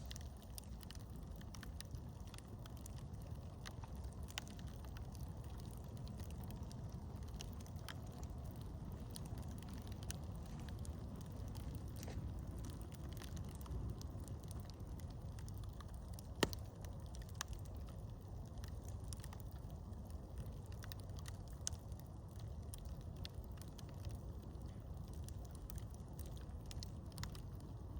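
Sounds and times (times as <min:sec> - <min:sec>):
campfire burning: 0:00.0 - 0:27.9
campfire crackles: 0:00.0 - 0:27.9
sharp pop of fire: 0:16.3 - 0:16.7.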